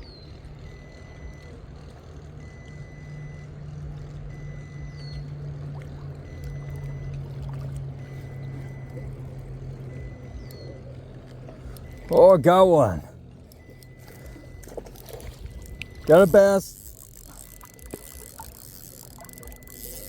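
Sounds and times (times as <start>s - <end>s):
low motor hum: 0.0s - 20.0s
faint short beep: 0.6s - 1.6s, 2.4s - 3.5s, 4.3s - 5.3s, 6.2s - 7.4s, 8.0s - 20.0s.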